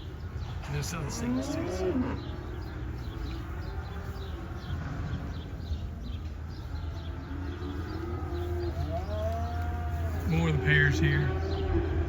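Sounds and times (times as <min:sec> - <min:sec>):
cow lowing: 0:01.0 - 0:05.4.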